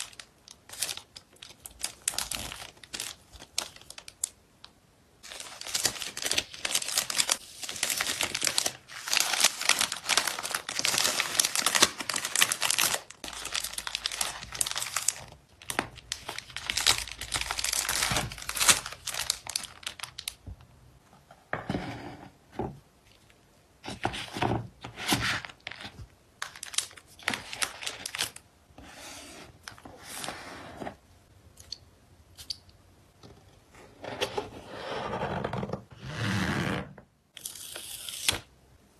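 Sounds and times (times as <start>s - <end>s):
plastic packing material crinkling: 0.0s - 4.4s, 5.2s - 20.4s, 25.4s - 28.4s.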